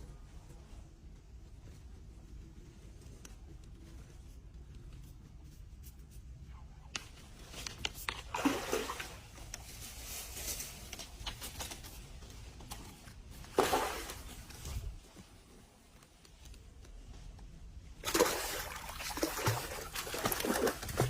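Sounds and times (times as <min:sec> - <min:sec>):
water splashing: 0:08.1 - 0:09.4, 0:13.4 - 0:14.6, 0:18.0 - 0:21.0.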